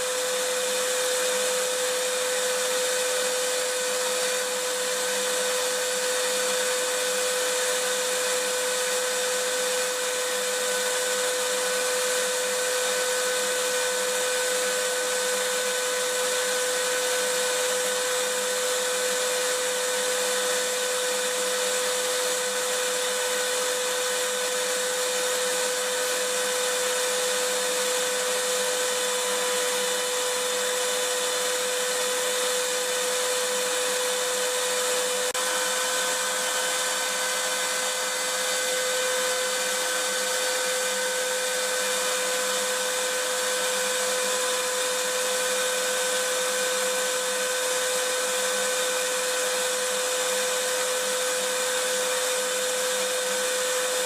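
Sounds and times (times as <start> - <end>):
vacuum cleaner running: 0.0 - 54.0.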